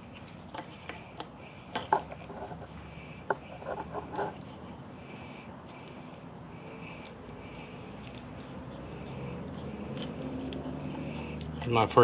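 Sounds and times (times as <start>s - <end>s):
hands handling wires and connectors: 0.0s - 4.8s.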